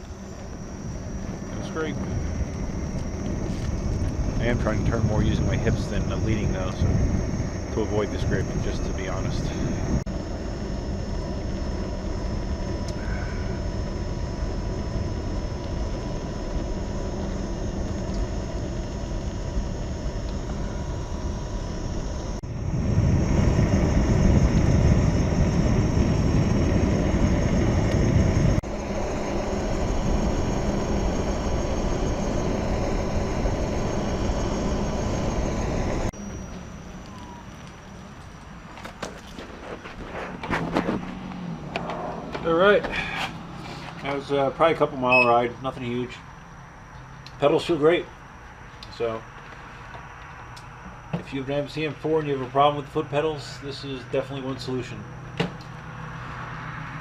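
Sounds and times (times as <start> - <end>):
wind rushing over microphone: 0.0 - 37.5
faint steady whine: 0.0 - 57.0
tyre rumble: 36.4 - 44.0.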